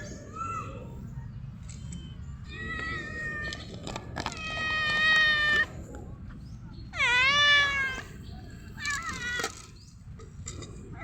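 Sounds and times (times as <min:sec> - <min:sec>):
cat meowing: 0:06.9 - 0:08.1.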